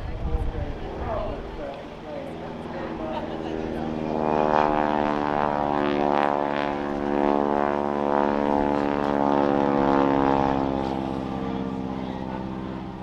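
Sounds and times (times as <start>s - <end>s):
biplane engine and propeller running: 0.0s - 13.0s.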